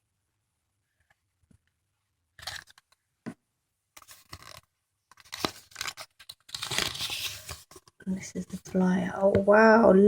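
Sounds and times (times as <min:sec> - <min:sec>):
wrapping crinkling and tearing: 0:05.2 - 0:07.8.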